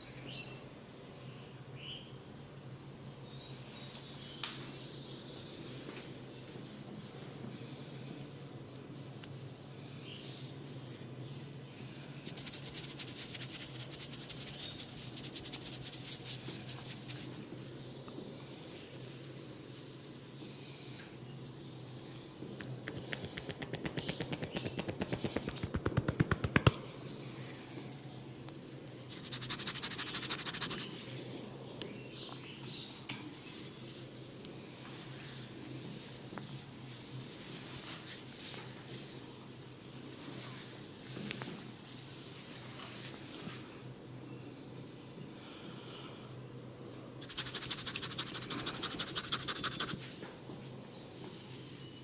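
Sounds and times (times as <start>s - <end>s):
fingers scratching through hair: 12.0s - 17.4s, 22.8s - 26.7s, 29.1s - 31.0s, 47.2s - 50.1s
fast hand taps on head: 22.8s - 26.8s.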